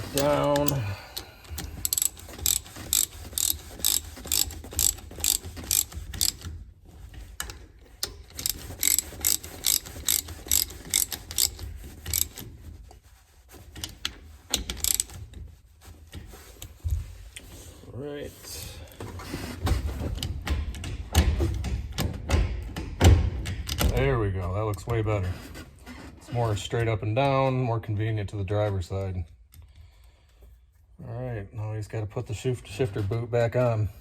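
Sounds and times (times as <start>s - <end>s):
hand ratchet clicking: 0.0s - 6.6s, 7.4s - 12.6s, 13.8s - 15.2s.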